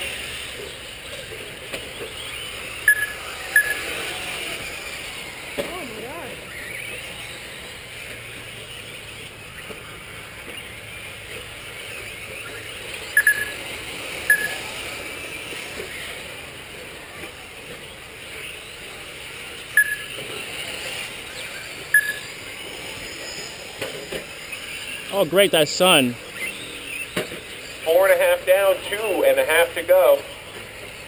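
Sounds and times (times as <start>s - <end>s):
rc trucks running hiss: 0.0s - 28.0s
short electronic beeps: 2.8s - 4.0s, 13.1s - 13.6s, 14.2s - 14.7s, 19.8s - 20.2s, 21.9s - 22.4s.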